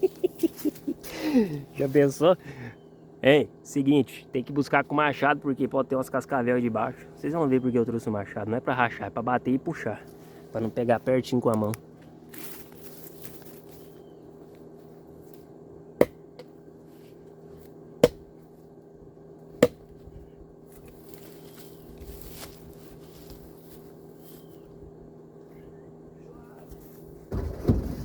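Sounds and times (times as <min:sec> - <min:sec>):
steady low hum: 0:00.0 - 0:28.0
axe striking firewood: 0:16.0 - 0:16.3, 0:18.0 - 0:18.4, 0:19.6 - 0:20.0.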